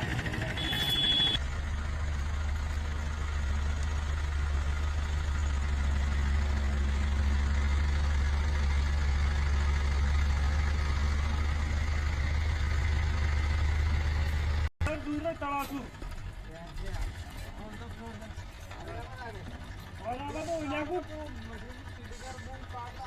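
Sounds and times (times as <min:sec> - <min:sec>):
diesel engine idling: 0:00.0 - 0:23.0.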